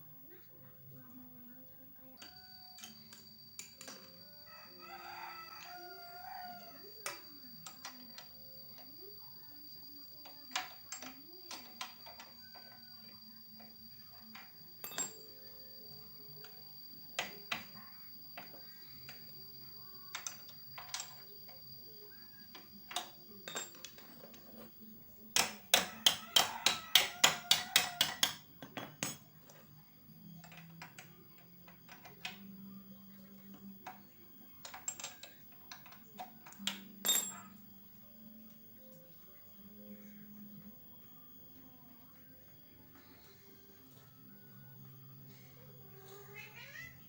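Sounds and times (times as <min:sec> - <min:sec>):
metal tools clinking: 0:14.3 - 0:15.4, 0:22.6 - 0:29.6, 0:34.6 - 0:37.6.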